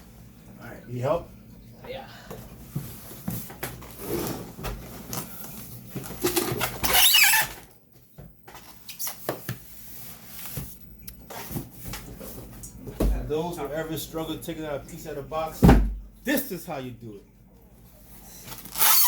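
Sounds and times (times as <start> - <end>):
cardboard scraping: 2.9 - 5.4.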